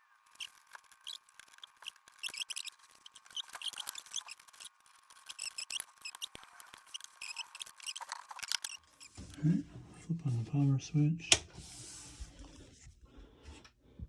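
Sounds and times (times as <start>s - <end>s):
computer parts clicking and scraping: 0.1s - 9.3s.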